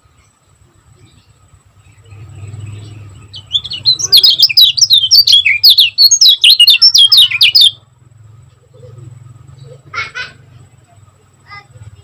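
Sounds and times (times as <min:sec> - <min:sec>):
bird singing rapid chirps: 0:00.0 - 0:07.9
faint low hum: 0:00.0 - 0:12.0.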